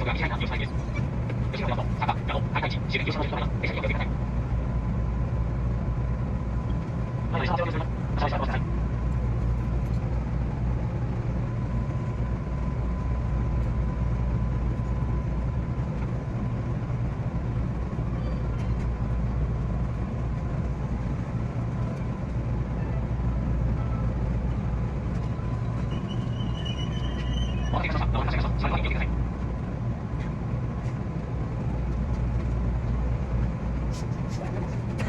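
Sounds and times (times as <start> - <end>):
faint steady whine: 0.0 - 10.4, 25.6 - 29.5
electric train rumble: 0.0 - 35.0.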